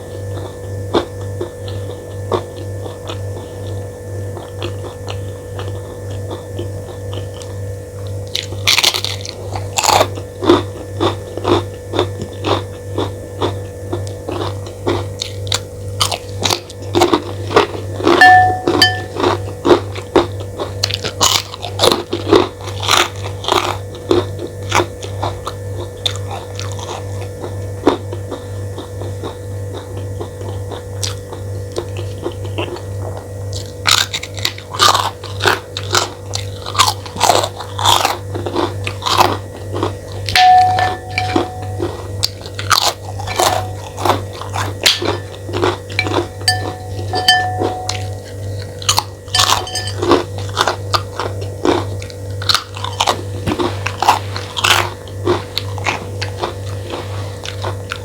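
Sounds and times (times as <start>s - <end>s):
close chewing and crunching: 0.0s - 58.0s
steady low hum: 18.2s - 19.5s, 40.4s - 50.5s.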